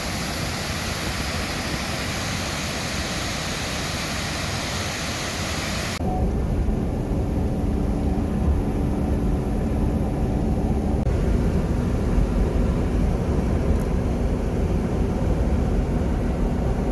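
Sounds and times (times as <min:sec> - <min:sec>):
faint hum: 0:05.6 - 0:16.9
vehicle rumble: 0:05.8 - 0:16.9.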